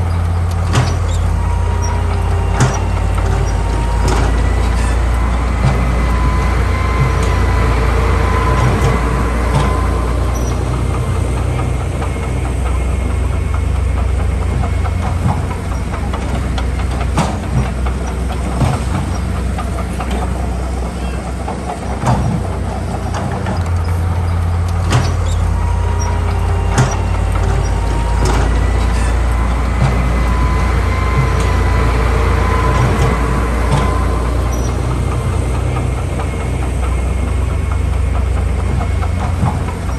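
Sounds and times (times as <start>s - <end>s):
heavy diesel engine working: 0.0s - 39.9s
faint high squealing: 23.6s - 35.0s.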